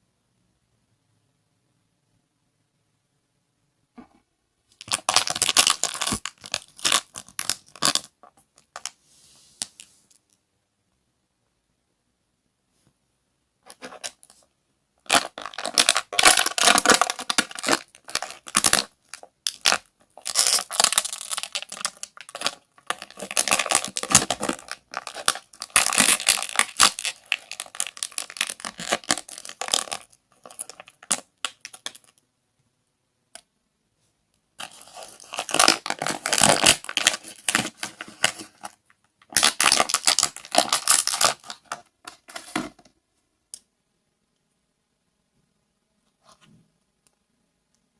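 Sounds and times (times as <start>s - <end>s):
plastic packaging crinkling and tearing: 4.8s - 8.9s, 15.1s - 32.2s, 34.6s - 42.8s.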